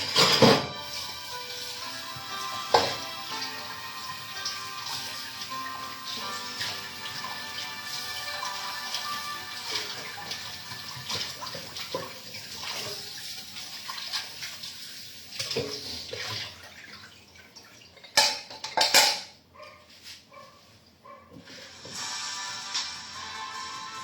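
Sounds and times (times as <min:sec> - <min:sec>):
tap water running into sink: 0:00.0 - 0:19.1
small dish clatters: 0:18.0 - 0:19.4.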